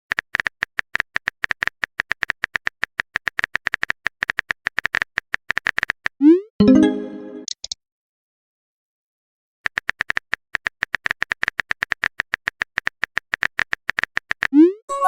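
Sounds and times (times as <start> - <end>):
phone keyboard clicks: 9.7 - 14.5.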